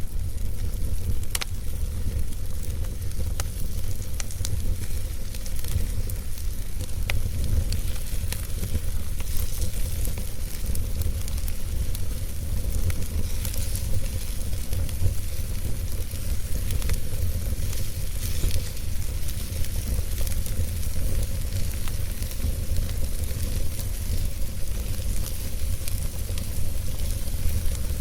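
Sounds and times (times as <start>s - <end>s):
wood fire crackling: 0.0s - 28.0s.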